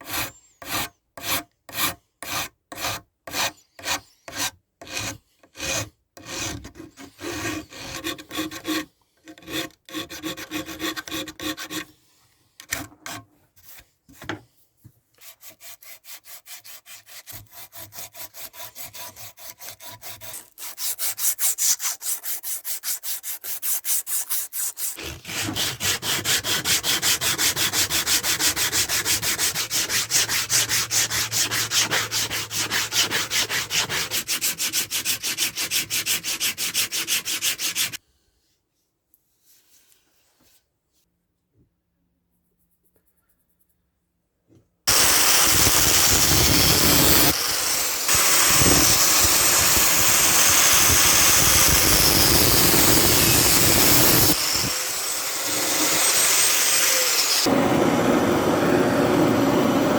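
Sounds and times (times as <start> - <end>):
hand tool rubbing on wood: 15.2 - 38.0.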